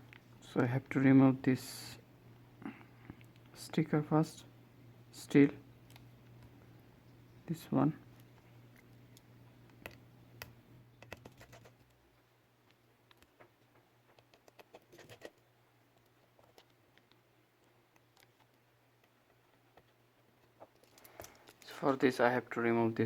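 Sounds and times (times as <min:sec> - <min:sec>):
steady low hum: 0:00.0 - 0:23.0
small tools clicking and scratching: 0:13.1 - 0:15.4, 0:16.0 - 0:21.8.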